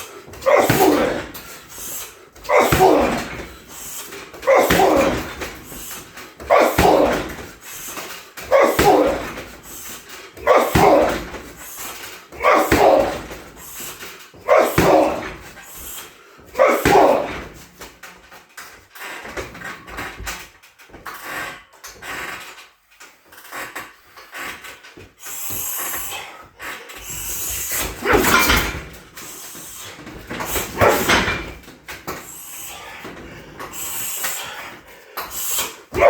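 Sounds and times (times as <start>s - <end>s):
kicks hitting heavy bag: 0.4s - 7.7s, 8.5s - 9.8s, 10.4s - 11.6s, 12.4s - 13.7s, 14.4s - 15.6s, 16.6s - 17.7s.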